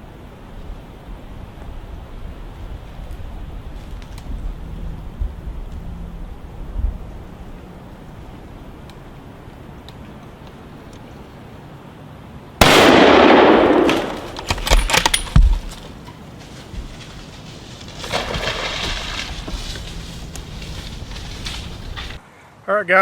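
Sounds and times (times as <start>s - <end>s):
rifle shot: 12.6s - 15.7s
sharp clicks and knocks: 13.7s - 16.0s.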